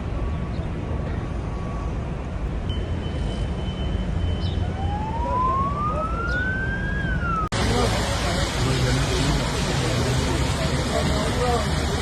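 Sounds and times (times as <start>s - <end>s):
emergency siren rising in pitch: 4.6s - 7.6s.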